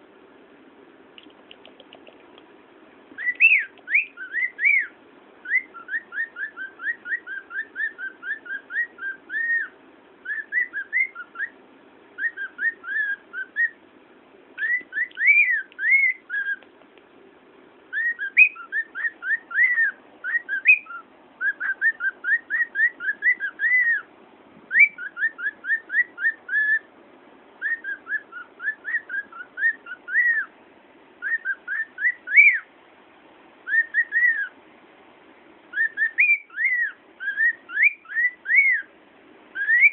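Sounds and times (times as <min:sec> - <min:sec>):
cockatiel whistling: 0:03.2 - 0:11.6, 0:12.2 - 0:13.8, 0:14.6 - 0:16.7, 0:17.9 - 0:24.1, 0:24.7 - 0:26.9, 0:27.6 - 0:30.5, 0:31.2 - 0:32.7, 0:33.6 - 0:34.6, 0:35.7 - 0:38.9, 0:39.5 - 0:39.9.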